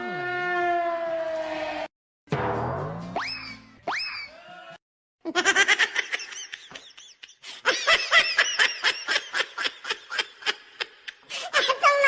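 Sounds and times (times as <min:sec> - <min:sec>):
high-pitched laughing: 0:05.3 - 0:12.0.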